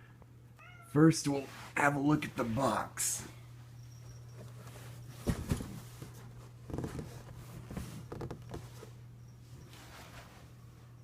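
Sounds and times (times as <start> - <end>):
steady low hum: 0.0 - 11.0
handling knocks and rustles: 4.2 - 10.6.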